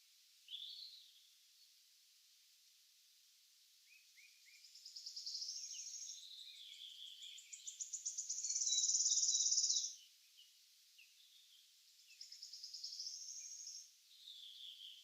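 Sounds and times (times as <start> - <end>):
songbird trilling: 3.9 - 10.0.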